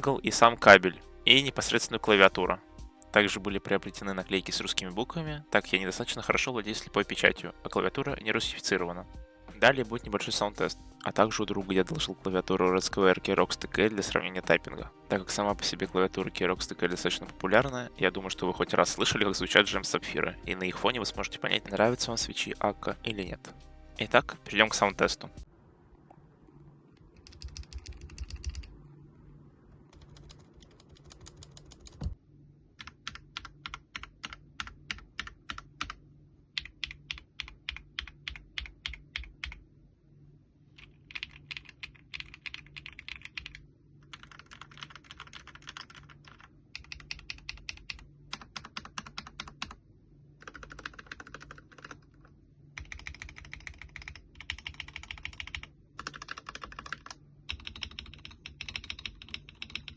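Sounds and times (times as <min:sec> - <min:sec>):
faint low hum: 0:24.0 - 0:59.9
mechanical keyboard typing: 0:27.2 - 0:28.7, 0:29.9 - 0:32.2, 0:32.8 - 0:36.0, 0:36.6 - 0:39.6, 0:40.8 - 0:49.8, 0:50.4 - 0:59.9.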